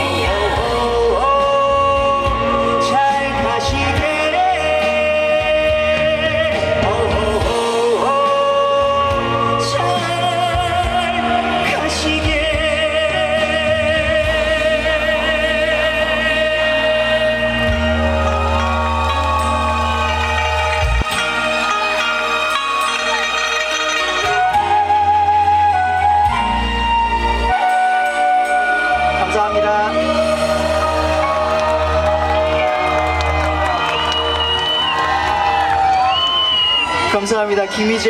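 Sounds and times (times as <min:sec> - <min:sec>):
man singing a ballad: 0:00.0 - 0:18.6
band accompaniment: 0:00.0 - 0:38.0.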